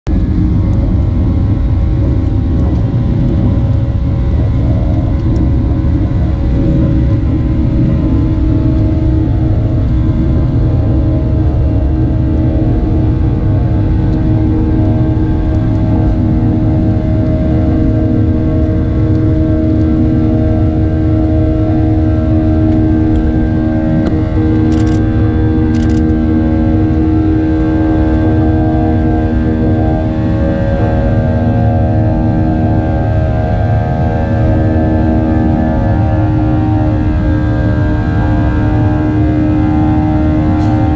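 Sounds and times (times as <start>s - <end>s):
faint whining tones: 0.1s - 40.9s
jet engine rumble in cabin: 0.1s - 40.9s.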